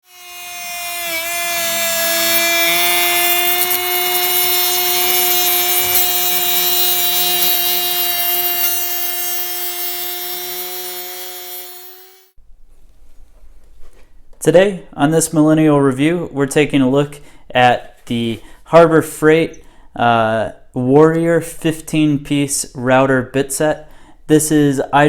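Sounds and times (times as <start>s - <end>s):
router cutting wood: 0.0s - 12.4s.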